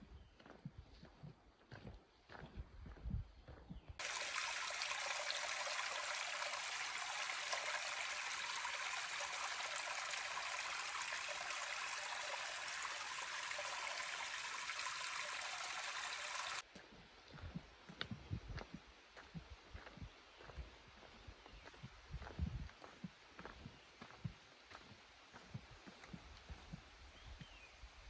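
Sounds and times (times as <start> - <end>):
rushing stream water: 4.0 - 16.6.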